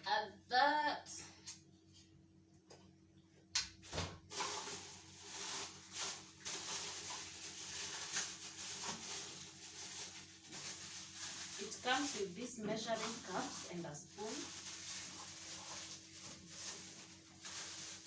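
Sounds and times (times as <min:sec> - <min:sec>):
packaging rustling and clattering: 0:04.3 - 0:18.0.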